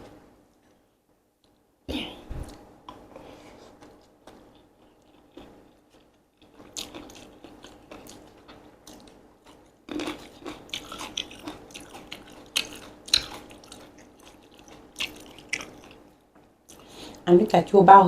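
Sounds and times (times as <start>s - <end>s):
chewing and crunching noodles: 3.8s - 17.0s.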